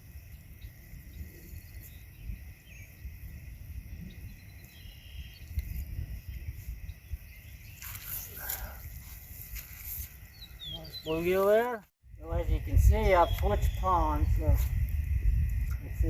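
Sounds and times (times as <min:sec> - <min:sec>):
high insect chorus: 0:00.0 - 0:16.0
faint bird chirps: 0:03.9 - 0:08.8.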